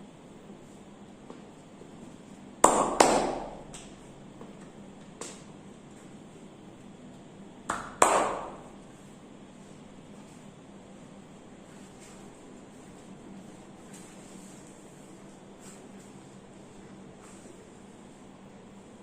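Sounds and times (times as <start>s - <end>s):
sharp hand slaps: 2.6s - 4.0s, 5.2s - 5.5s, 7.7s - 8.8s.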